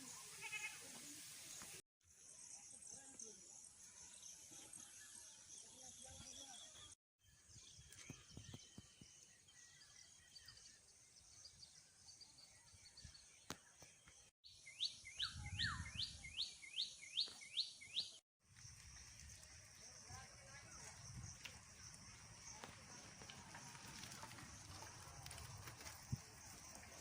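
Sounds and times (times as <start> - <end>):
steady high-pitched hiss: 0.0 - 3.0.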